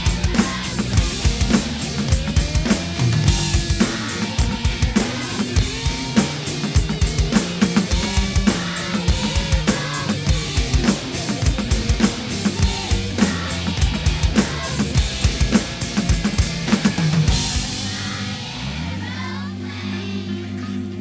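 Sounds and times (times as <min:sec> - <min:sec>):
drum kit playing a groove: 0:00.0 - 0:18.3
recorded song: 0:00.0 - 0:21.0
cymbal crash: 0:02.8 - 0:18.8.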